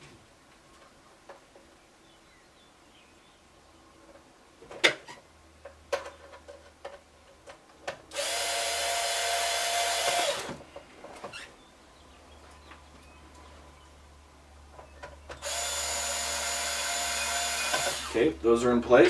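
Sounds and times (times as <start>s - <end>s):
power drill whining: 8.1s - 10.6s, 15.4s - 18.3s.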